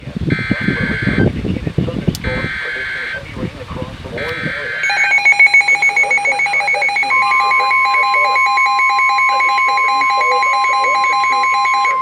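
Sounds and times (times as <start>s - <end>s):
steady alarm tone: 0.0s - 1.4s, 2.2s - 12.0s
rapid pulsing beeps: 0.3s - 12.0s.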